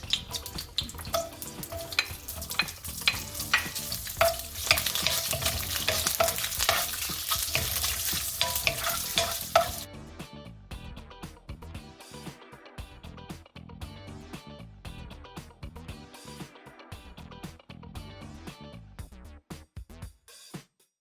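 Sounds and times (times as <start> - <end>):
sausage sizzling in oil: 0.0 - 9.9
utensil knocking on pan: 0.0 - 9.9.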